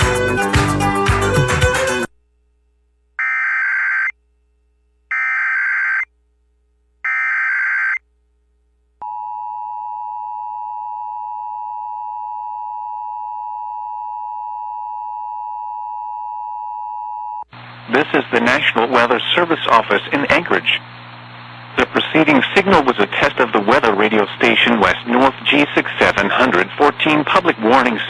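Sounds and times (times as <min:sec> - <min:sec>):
music: 0:00.0 - 0:02.1
single-pitch alarm tone: 0:03.2 - 0:04.1.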